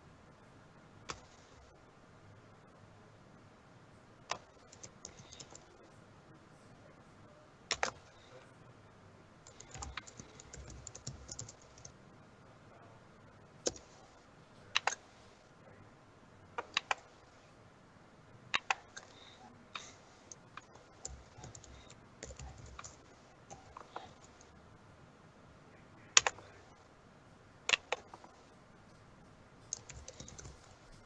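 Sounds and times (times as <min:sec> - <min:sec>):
typing on computer keyboard: 0:04.3 - 0:05.8, 0:07.7 - 0:08.2, 0:09.4 - 0:12.0, 0:13.6 - 0:14.1, 0:16.6 - 0:17.0, 0:18.5 - 0:24.5, 0:26.2 - 0:26.7, 0:29.7 - 0:30.7.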